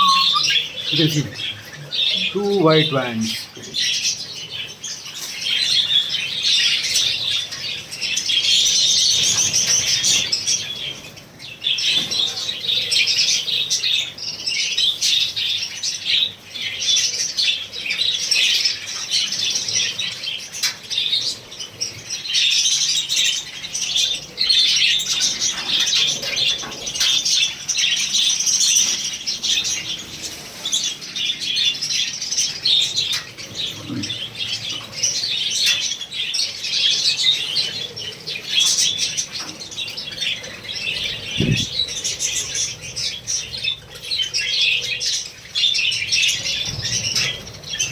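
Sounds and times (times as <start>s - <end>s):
parrots chattering and screeching: 0.0s - 4.2s.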